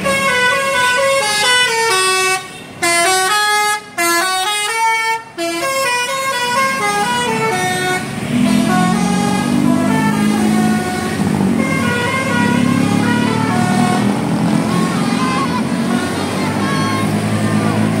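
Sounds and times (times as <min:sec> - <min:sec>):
melodic bus horn: 0:00.0 - 0:18.0.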